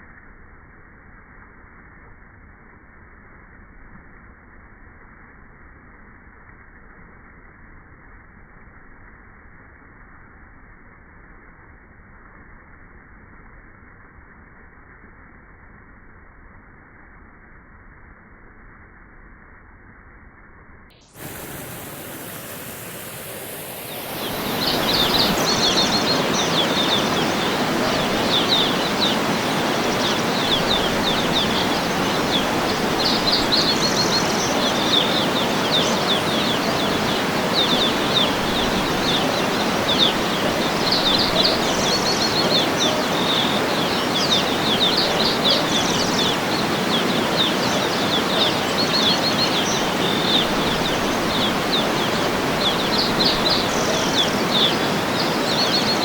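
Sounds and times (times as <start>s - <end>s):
small birds chirping: 21.0s - 56.0s
waterfall rushing: 21.1s - 56.0s.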